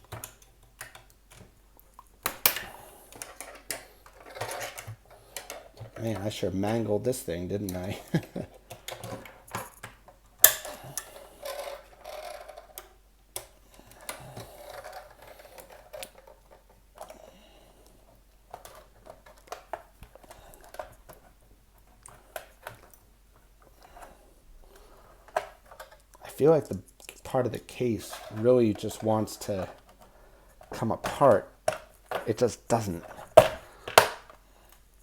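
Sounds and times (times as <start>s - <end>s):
sharp plastic crack: 0.0s - 2.7s, 30.7s - 34.4s
plastic clicking and creaking: 0.0s - 34.9s.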